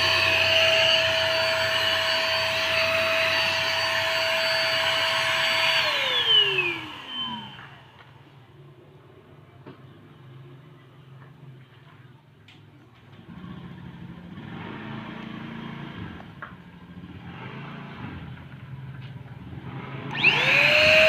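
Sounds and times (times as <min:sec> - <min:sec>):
motor winding down: 0:00.0 - 0:08.2, 0:19.8 - 0:21.0
paint spray gun whining: 0:00.0 - 0:08.3, 0:20.1 - 0:21.0.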